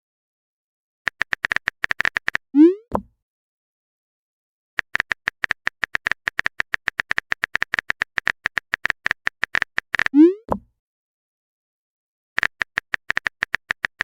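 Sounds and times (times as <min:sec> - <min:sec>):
phone keyboard taps: 0:04.8 - 0:10.7, 0:12.4 - 0:14.0.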